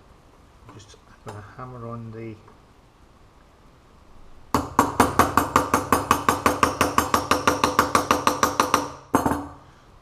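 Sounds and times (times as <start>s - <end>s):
hammer tapping on metal: 4.5s - 9.6s.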